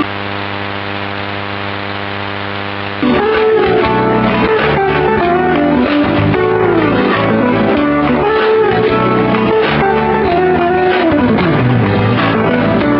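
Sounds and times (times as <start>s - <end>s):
guitar music with sliding notes: 2.9s - 12.9s
low bass part: 3.0s - 12.9s.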